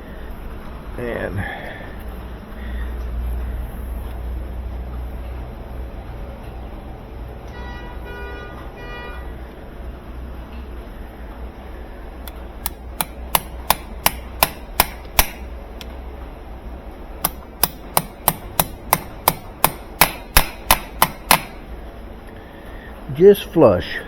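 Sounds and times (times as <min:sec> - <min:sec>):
hammer tapping metal: 0:12.6 - 0:15.5, 0:17.2 - 0:21.6.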